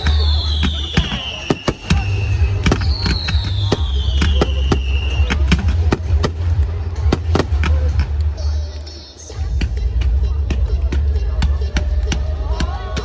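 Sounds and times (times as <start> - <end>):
firework whistles falling in pitch: 0.0 - 5.3
fireworks bangs and cracks: 0.0 - 8.3.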